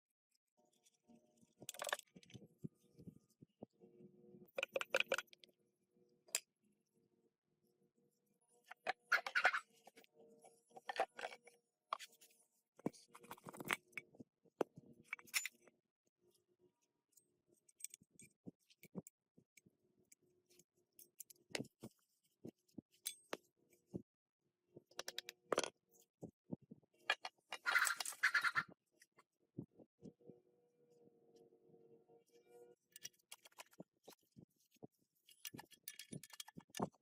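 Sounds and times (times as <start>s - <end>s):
metal tools clinking and scraping: 35.2s - 37.0s.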